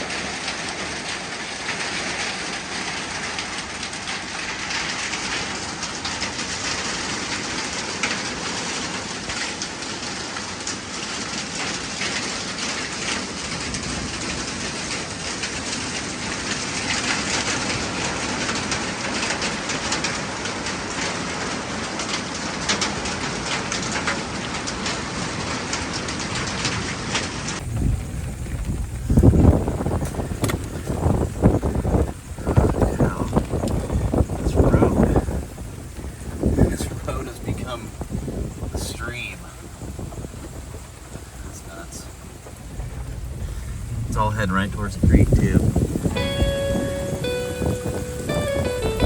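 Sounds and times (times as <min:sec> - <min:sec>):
heavy rain and hail pelting: 0:00.0 - 0:49.0.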